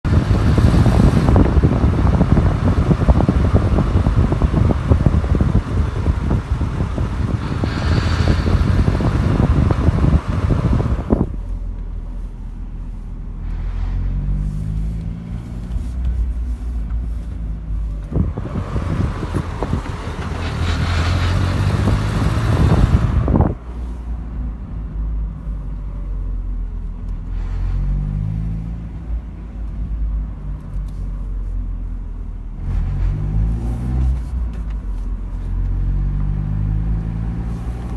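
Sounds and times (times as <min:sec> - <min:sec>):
car rattling: 0:00.0 - 0:23.6
car engine running: 0:00.0 - 0:27.3
road noise: 0:00.0 - 0:37.9.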